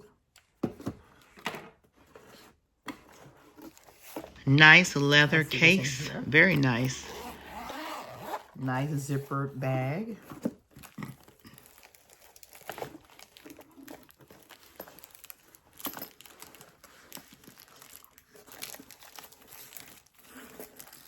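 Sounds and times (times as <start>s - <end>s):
packaging crinkling and rustling: 10.2s - 21.0s.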